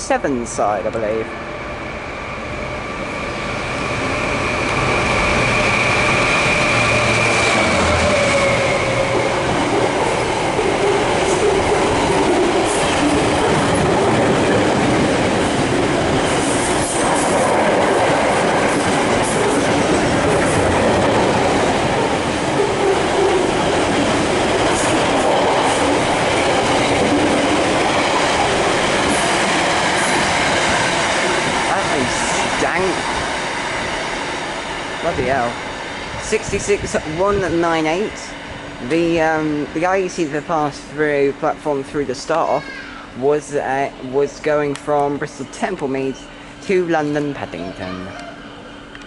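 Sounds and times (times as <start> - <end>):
freight train rumbling past: 0.0 - 49.0
pitched tone from train: 1.0 - 9.4, 47.4 - 48.9.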